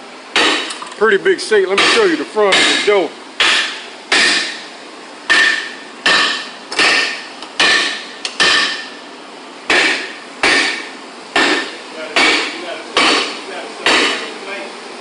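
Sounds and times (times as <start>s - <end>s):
hammer striking steel: 0.4s - 0.8s, 1.7s - 4.7s, 5.3s - 9.0s, 9.7s - 14.3s.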